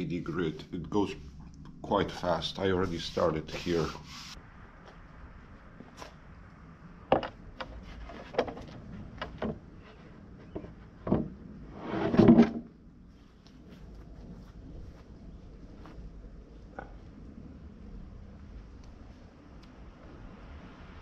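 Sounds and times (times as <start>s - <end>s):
wood scraping: 2.8s - 4.4s, 7.2s - 12.7s
wood knocks and taps: 7.1s - 9.6s, 10.4s - 11.3s.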